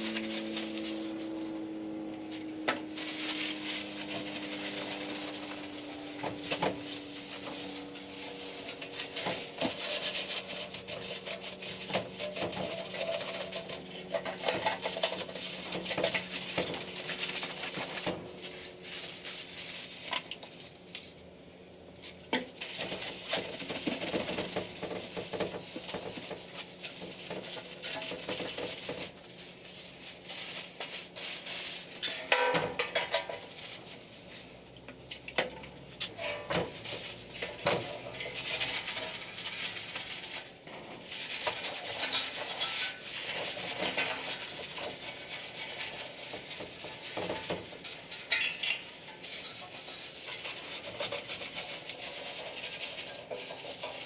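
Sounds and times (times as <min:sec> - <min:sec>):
hand scraping metal can: 0:00.0 - 0:20.6, 0:22.5 - 0:34.5, 0:36.0 - 0:54.0
metal clanks: 0:32.0 - 0:33.4.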